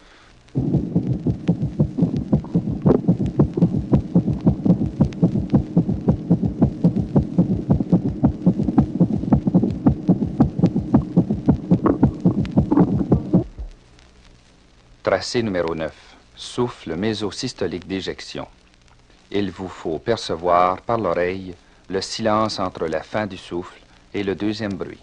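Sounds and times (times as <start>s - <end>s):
steady low hum: 0.0s - 25.0s
fast heartbeat: 0.6s - 13.8s.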